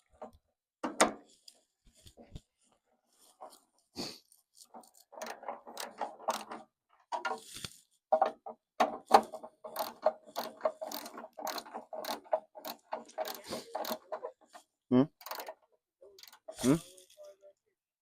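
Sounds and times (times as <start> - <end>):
ratchet wrench clicking: 5.2 - 6.6, 9.7 - 14.0, 15.2 - 15.6, 16.2 - 16.5.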